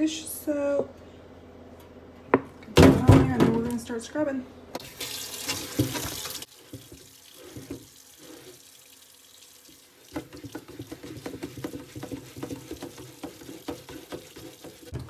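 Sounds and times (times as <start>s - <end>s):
tap running into sink: 4.8s - 8.0s, 9.6s - 15.0s
scrubbing a soapy pan: 5.4s - 9.0s, 9.8s - 15.0s.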